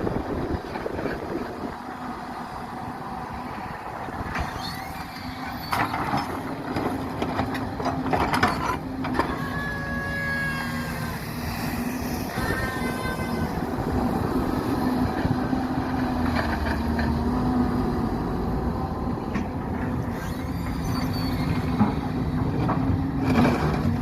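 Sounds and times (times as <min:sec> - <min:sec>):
excavator diesel engine humming: 0:00.0 - 0:24.0
brief high squeals: 0:12.2 - 0:13.6, 0:20.1 - 0:21.8.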